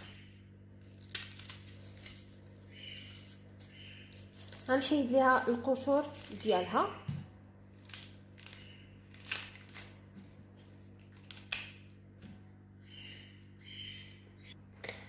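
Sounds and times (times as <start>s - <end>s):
onion skin crackling and tearing: 0.0s - 6.8s, 7.6s - 12.3s.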